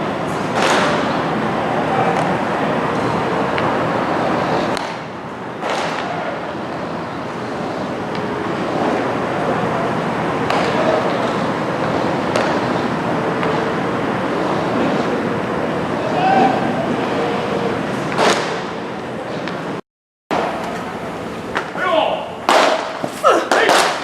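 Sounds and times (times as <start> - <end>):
crowd hubbub: 22.4 - 24.0.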